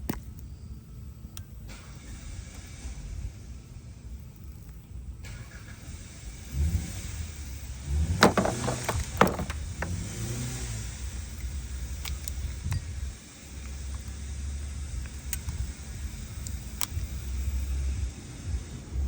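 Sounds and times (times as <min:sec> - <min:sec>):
tools clicking and knocking: 0:08.2 - 0:10.0.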